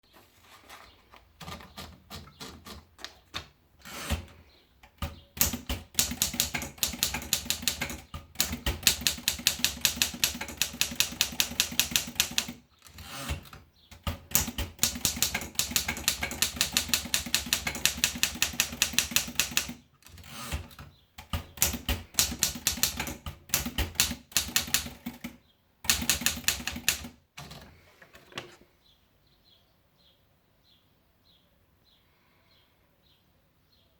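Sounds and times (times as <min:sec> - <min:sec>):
manual typewriter typing: 0:01.3 - 0:27.8.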